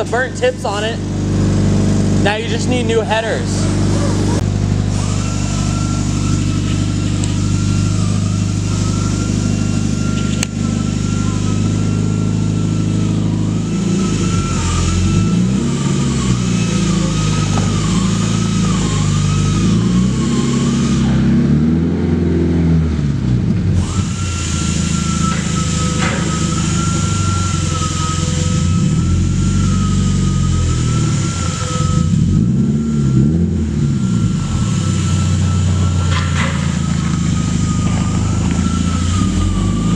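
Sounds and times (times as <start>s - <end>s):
car engine idling and revving: 0.0s - 39.9s.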